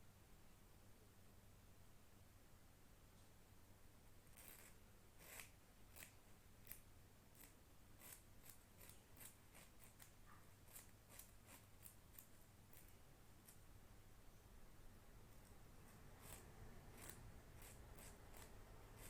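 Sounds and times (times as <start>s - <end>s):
clicks and scrapes of puzzle cube: 4.3s - 6.8s, 7.4s - 13.6s, 15.4s - 19.0s.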